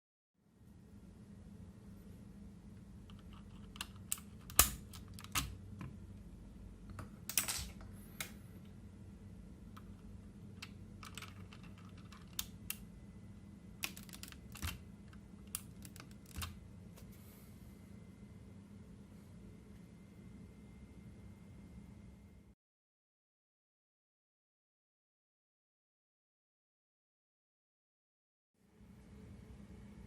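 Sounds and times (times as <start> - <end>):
mechanical keyboard key clicks: 13.8 - 14.8, 15.4 - 16.5.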